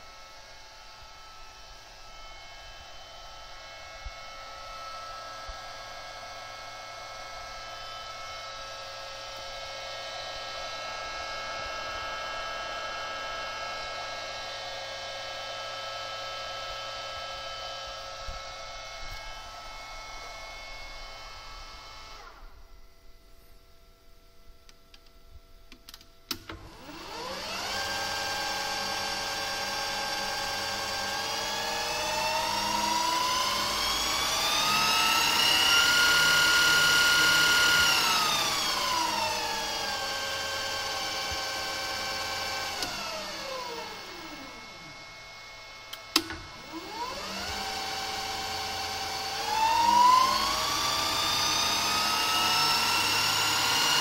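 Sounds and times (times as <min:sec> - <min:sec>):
lathe motor whining: 0:26.4 - 0:54.0.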